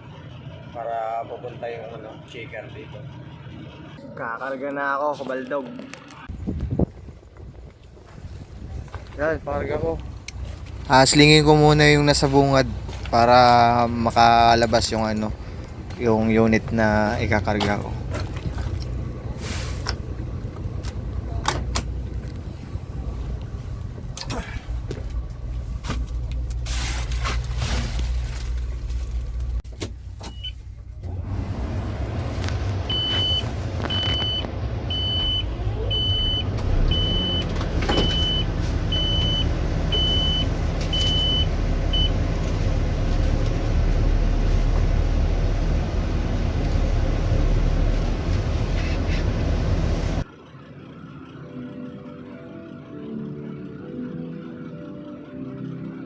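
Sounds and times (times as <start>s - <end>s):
heavy diesel engine running: 0.0s - 4.6s, 5.9s - 55.2s
reversing alarm beeping: 32.9s - 42.2s.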